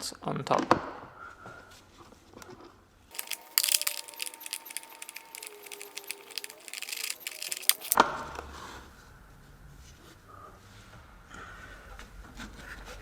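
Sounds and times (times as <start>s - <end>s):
socket wrench clicking: 3.2s - 8.0s.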